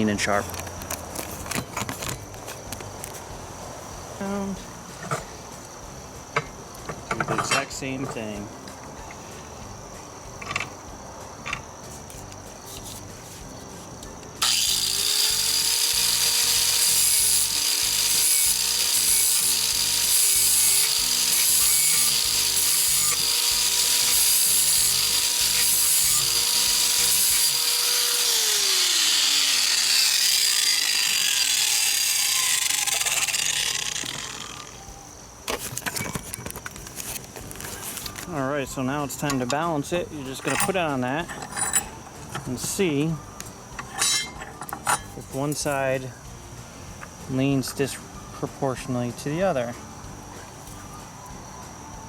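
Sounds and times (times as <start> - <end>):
grinding stone on metal blade: 14.4 - 34.7
grinder motor whine: 14.4 - 35.0.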